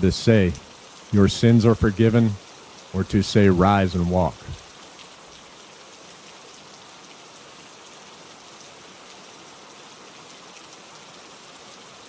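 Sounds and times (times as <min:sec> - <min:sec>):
rain drop ticks: 0:00.0 - 0:07.2
steady rain hiss: 0:00.0 - 0:12.0.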